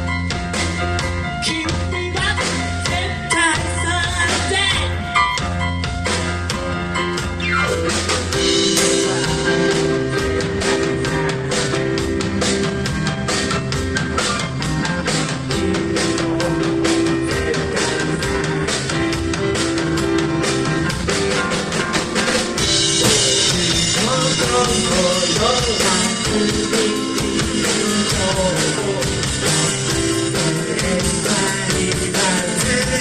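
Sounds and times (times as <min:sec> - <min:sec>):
drum kit: 0:00.0 - 0:33.0
rock band playing live: 0:00.0 - 0:33.0.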